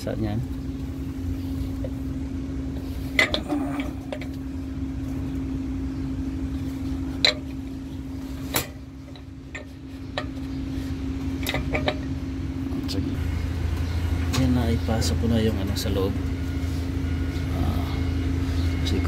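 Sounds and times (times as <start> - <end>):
engine hum: 0.0 - 19.0
metal parts clinking: 3.1 - 4.4.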